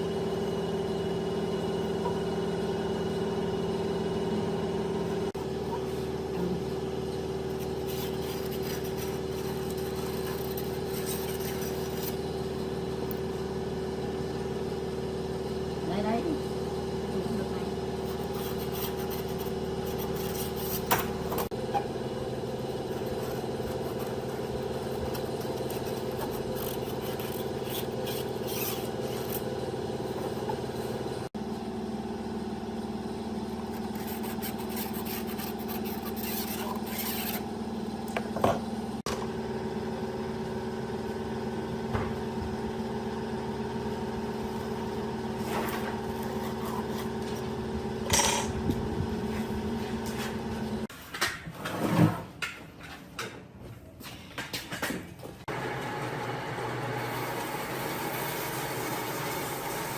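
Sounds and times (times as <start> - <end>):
machine motor humming: 55.5 - 59.9.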